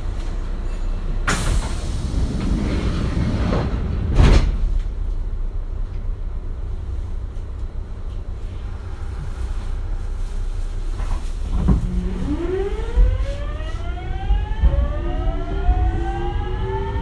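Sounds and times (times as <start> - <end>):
low hum of stopped train: 0.0 - 17.0
train doors thumping shut: 0.2 - 5.3.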